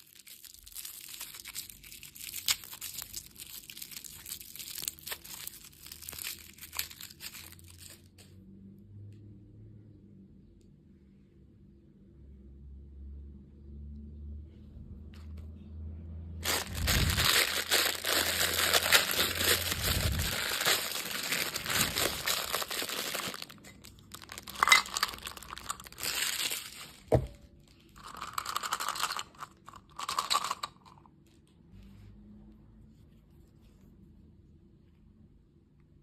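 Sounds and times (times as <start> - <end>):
candy packaging tearing and crinkling: 0.0 - 8.3, 16.4 - 30.8.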